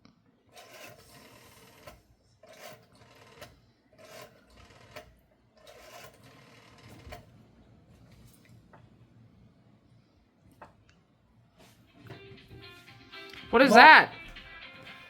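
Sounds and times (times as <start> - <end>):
rotary telephone dial whirring: 0.5 - 7.5.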